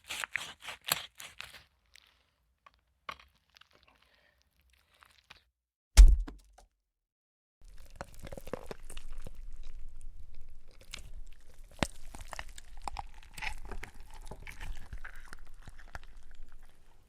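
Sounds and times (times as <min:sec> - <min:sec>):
flesh tearing and crunching: 0:00.0 - 0:05.4, 0:07.8 - 0:17.0
sharp crack: 0:06.0 - 0:06.3.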